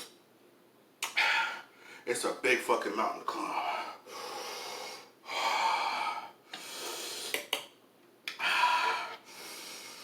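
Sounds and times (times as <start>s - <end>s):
man breathing hard: 1.1s - 2.1s, 3.4s - 7.4s, 8.3s - 10.0s.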